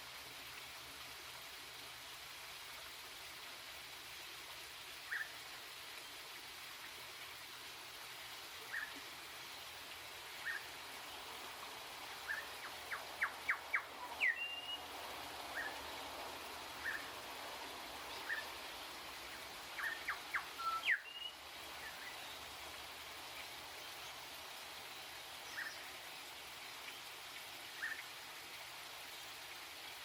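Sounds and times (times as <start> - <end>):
steady hiss: 0.0 - 30.0
bird whistling song: 12.3 - 14.8, 16.8 - 17.1, 19.8 - 22.1.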